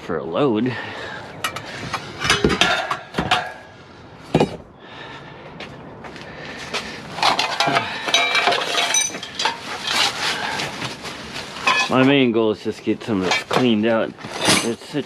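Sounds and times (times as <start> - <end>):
scrap steel clanking: 1.3 - 4.6, 7.0 - 12.2, 13.0 - 15.0.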